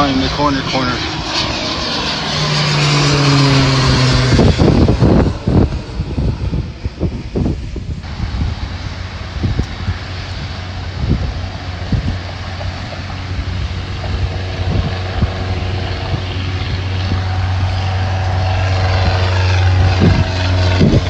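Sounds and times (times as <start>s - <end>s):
propeller airplane engine droning: 0.0s - 21.0s
wind buffeting microphone: 0.0s - 21.0s.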